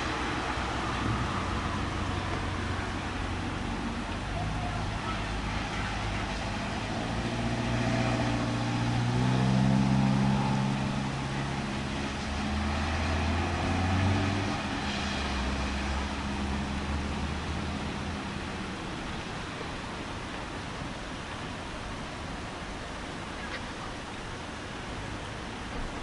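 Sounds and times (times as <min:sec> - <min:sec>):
car engine humming: 0:00.0 - 0:14.8.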